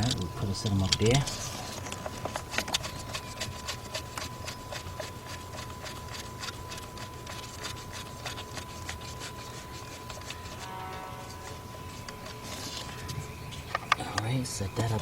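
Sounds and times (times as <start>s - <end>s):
metal parts clicking and rubbing: 0.0s - 8.4s
low hum: 0.0s - 15.0s
faint high-pitched tone: 10.4s - 15.0s.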